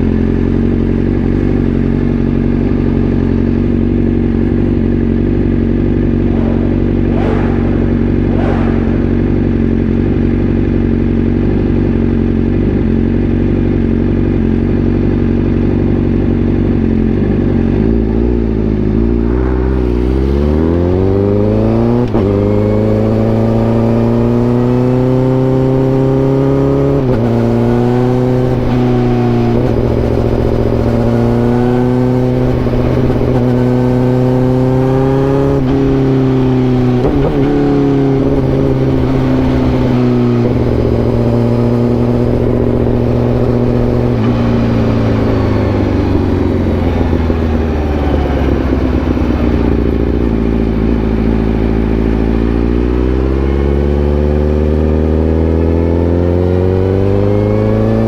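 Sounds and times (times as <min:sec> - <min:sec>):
motorcycle engine revving: 0:00.0 - 0:58.0.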